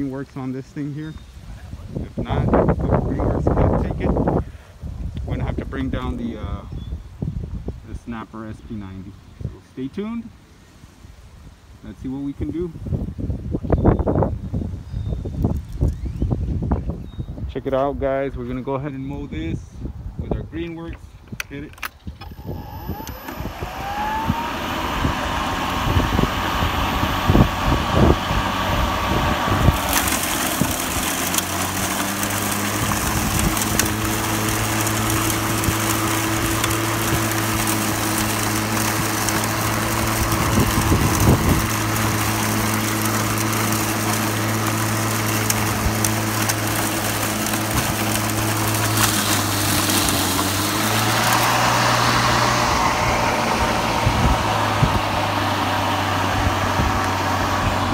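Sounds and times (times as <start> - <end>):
electric lawn mower motor whine: 21.8 - 57.9
grass being cut: 22.2 - 57.9.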